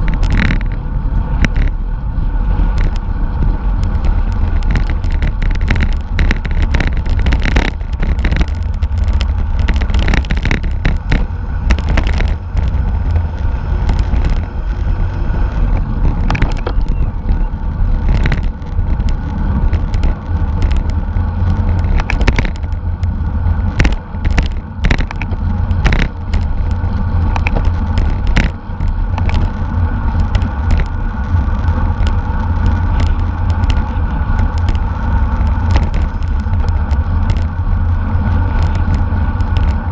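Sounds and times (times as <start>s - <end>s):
clicks and rattles: 0.0s - 0.8s, 3.8s - 14.9s, 15.5s - 23.1s, 23.7s - 37.6s
bicycle road and drivetrain noise: 0.0s - 39.9s
wind buffeting microphone: 0.0s - 39.9s.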